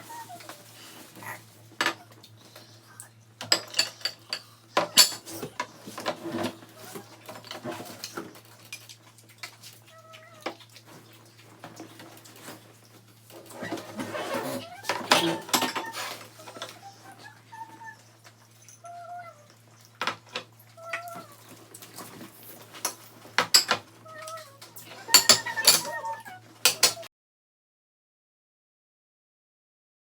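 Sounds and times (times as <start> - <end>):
cutlery clinking on dishes: 3.4 - 6.5, 14.9 - 16.1, 22.7 - 23.8, 25.0 - 26.1, 26.7 - 27.1.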